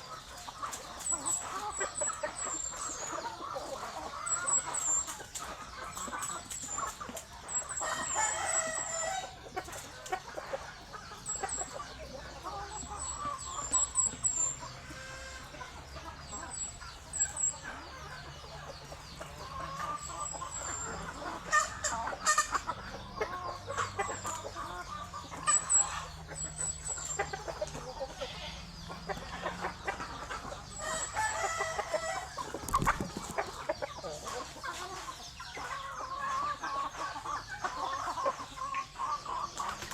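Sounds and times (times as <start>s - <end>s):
chickens clucking: 0.0s - 39.9s
rooster crowing: 7.7s - 9.4s, 30.8s - 32.4s.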